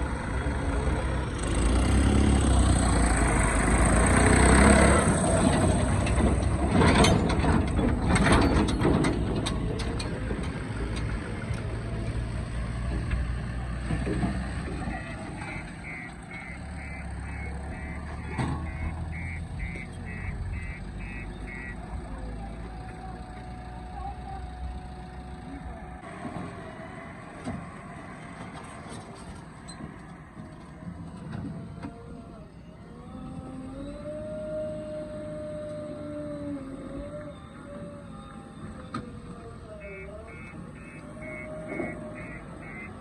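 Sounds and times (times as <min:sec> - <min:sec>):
diesel engine running: 0:00.0 - 0:43.0
reversing alarm beeping: 0:14.9 - 0:22.0, 0:39.8 - 0:43.0.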